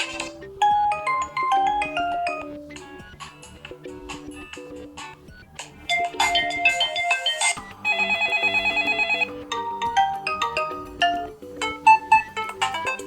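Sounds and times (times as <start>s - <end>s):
electronic phone ringtone melodies: 0.0s - 3.2s, 5.8s - 13.0s.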